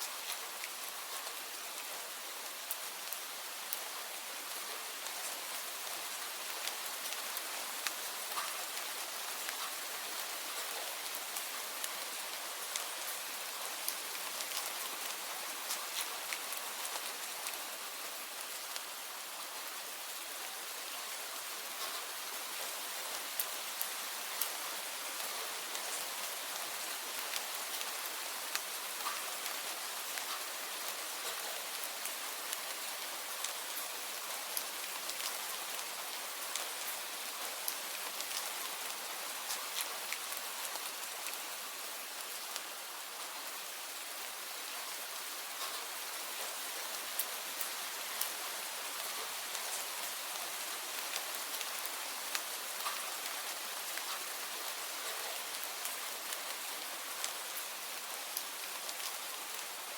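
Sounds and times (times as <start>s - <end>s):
steady rain: 0.0s - 59.9s
raindrops tapping on a surface: 45.6s - 45.8s.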